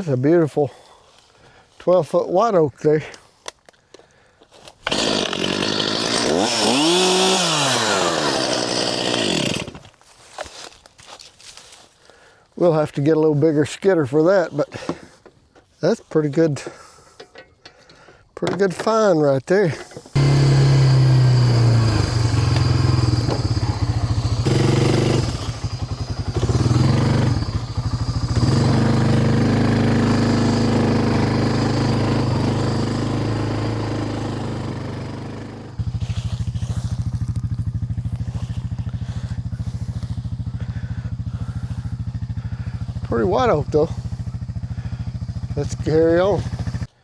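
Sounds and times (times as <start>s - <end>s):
small vehicle engine running: 4.8s - 9.8s, 20.1s - 46.9s.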